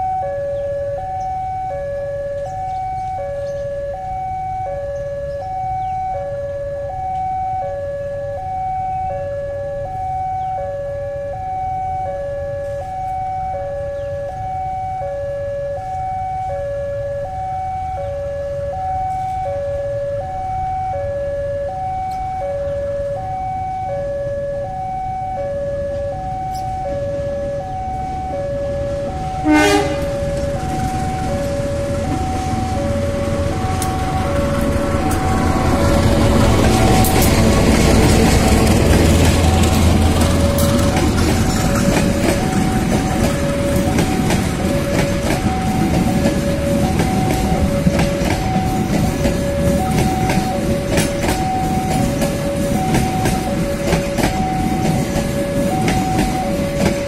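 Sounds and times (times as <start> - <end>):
low traffic rumble: 0.0 - 57.0
two-tone crossing warning siren: 0.0 - 57.0
loud horn blast: 29.2 - 41.0.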